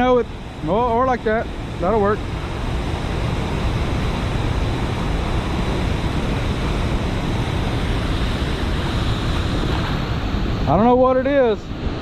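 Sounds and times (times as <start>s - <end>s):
water rushing through spillway: 0.0s - 12.0s.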